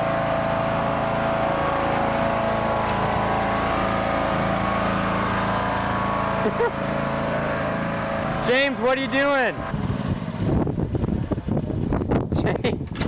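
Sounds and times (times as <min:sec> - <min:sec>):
riding lawn mower engine running: 0:00.0 - 0:13.0.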